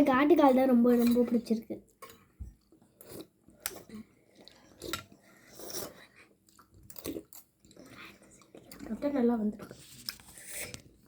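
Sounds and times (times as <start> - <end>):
people chewing and biting: 2.6 - 8.9.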